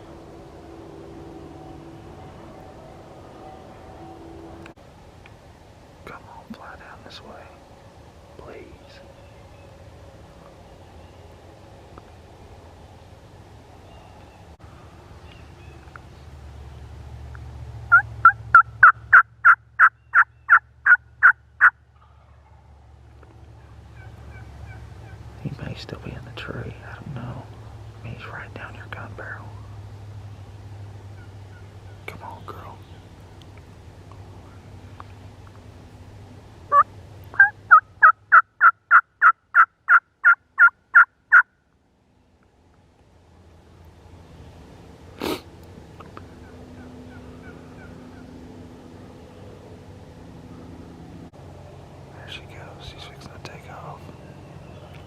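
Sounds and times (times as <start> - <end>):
turkey yelping: 17.9 - 22.6, 36.7 - 41.5.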